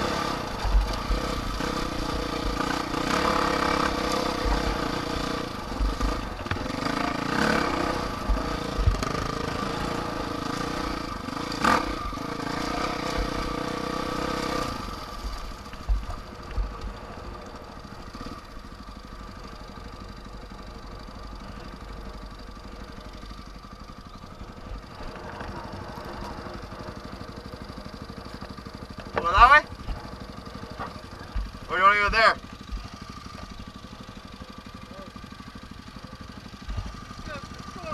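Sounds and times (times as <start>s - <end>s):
vehicle engine running: 0.0s - 37.9s
sharp knocks and thumps: 15.2s - 17.0s.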